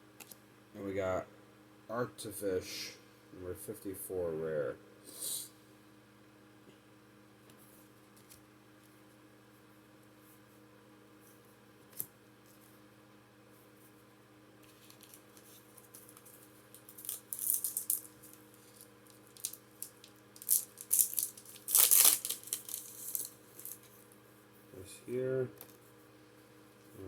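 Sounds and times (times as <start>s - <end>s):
foil wrapper crinkling and tearing: 14.7s - 23.9s.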